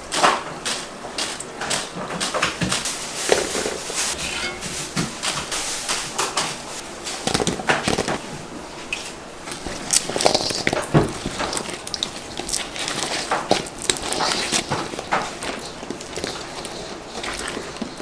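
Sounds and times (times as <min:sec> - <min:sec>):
utensils and dishes clattering: 0:01.7 - 0:08.2
room noise: 0:02.3 - 0:09.8.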